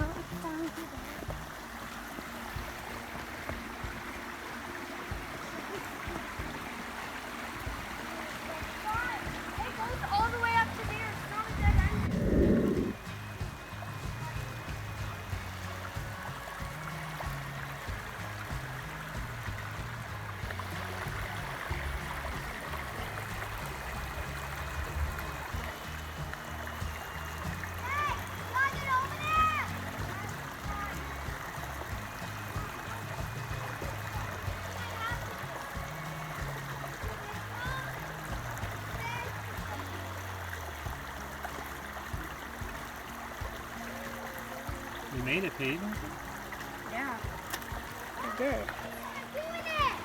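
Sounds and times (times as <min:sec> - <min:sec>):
background music: 0:00.0 - 0:50.0
flowing water rushing: 0:00.0 - 0:50.0
short low thumps: 0:08.7 - 0:39.0.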